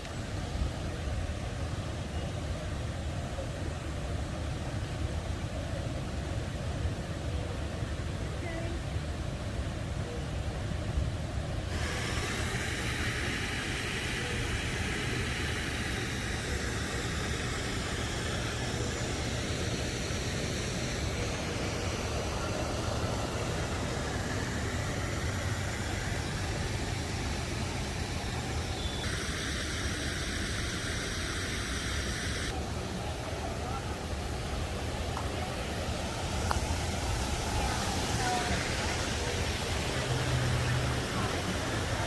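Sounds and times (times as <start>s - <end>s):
waterfall rushing and splashing: 11.6s - 42.0s.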